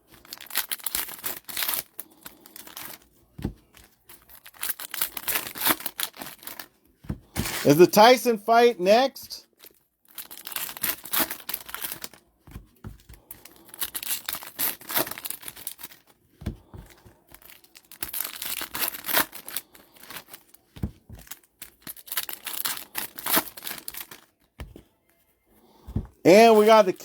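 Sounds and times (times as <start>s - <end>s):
wrappers torn and crinkled: 0.0s - 3.1s, 3.9s - 6.7s, 9.5s - 12.4s, 13.2s - 16.2s, 17.1s - 24.5s
cards handled: 10.7s - 27.0s.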